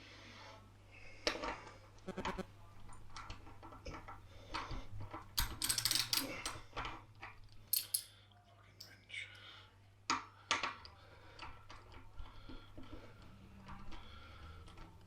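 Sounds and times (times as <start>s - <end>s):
hand tool metallic clicks and scrapes: 7.7s - 8.1s.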